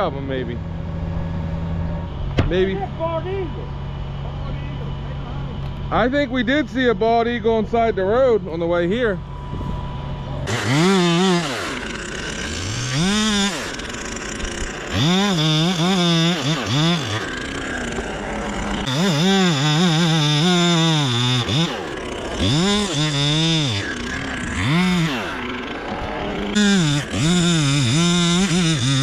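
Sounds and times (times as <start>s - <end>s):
chainsaw engine revving: 10.4s - 29.0s.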